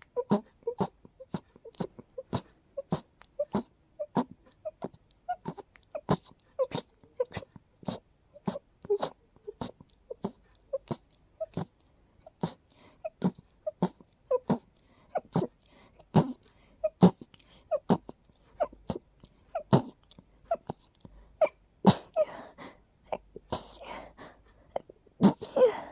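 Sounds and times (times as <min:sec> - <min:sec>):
person sneezing rapidly: 0:21.4 - 0:22.4
breathy breathing: 0:23.5 - 0:25.9.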